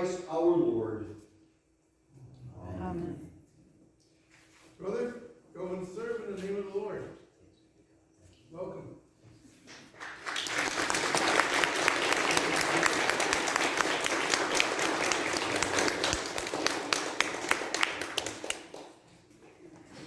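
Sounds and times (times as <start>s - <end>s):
crowd applauding: 9.7s - 19.0s.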